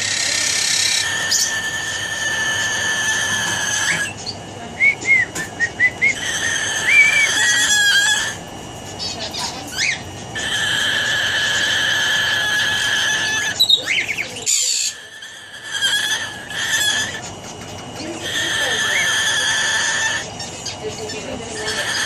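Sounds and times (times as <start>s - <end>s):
cockatoo chirps: 0.0s - 22.0s
cockatoo high whistle-like tone: 4.9s - 8.4s.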